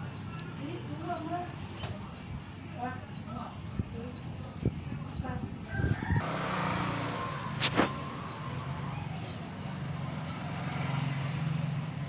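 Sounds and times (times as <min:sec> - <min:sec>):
sharp click: 0:07.6 - 0:08.0.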